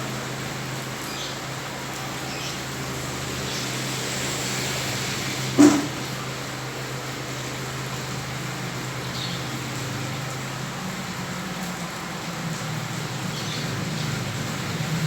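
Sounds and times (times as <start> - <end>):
steady rain on flooded street: 0.0 - 15.0
vehicle engine hum: 0.0 - 15.0
sharp loud thump: 5.6 - 6.0.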